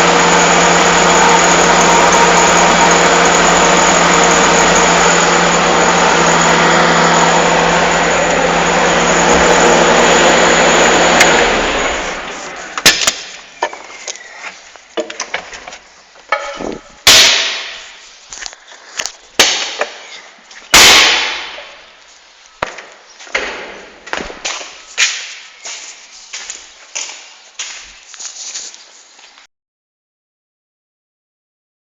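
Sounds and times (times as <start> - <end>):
diesel engine running: 0.0 - 14.2
sharp knocks: 16.3 - 17.8, 22.6 - 25.4
loud thumps: 16.3 - 18.0.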